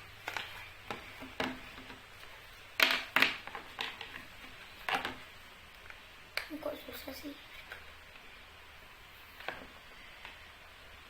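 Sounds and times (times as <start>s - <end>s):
plastic parts clicking and knocking: 0.2s - 2.1s, 2.8s - 5.3s.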